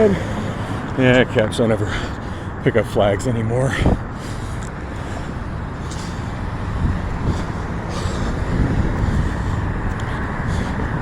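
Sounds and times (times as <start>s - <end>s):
passing cars: 0.0s - 11.0s.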